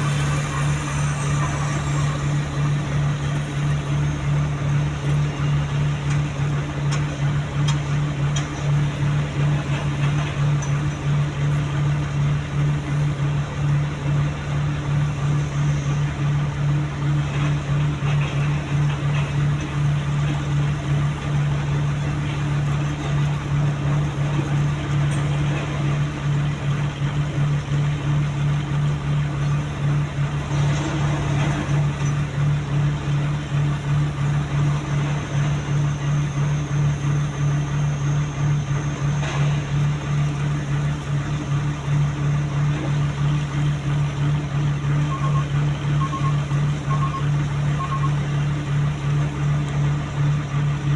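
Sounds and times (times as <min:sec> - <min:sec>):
diesel engine droning: 0:00.0 - 0:50.9.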